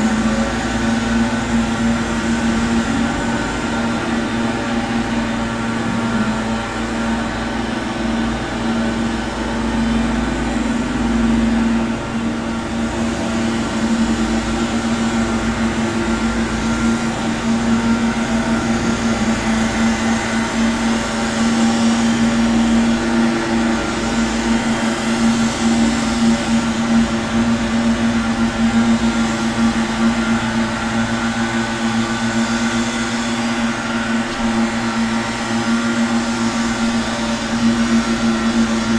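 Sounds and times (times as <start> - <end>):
gardening machine motor drone: 0.0 - 38.9.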